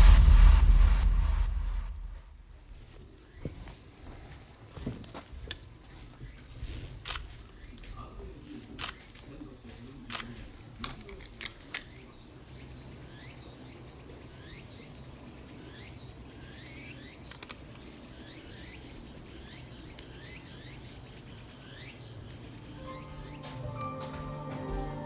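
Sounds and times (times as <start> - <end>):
sharp clicks: 8.8 - 9.4, 10.0 - 12.1, 16.6 - 17.9
chirping animal calls: 11.8 - 24.8
faint high buzzing: 12.0 - 25.0.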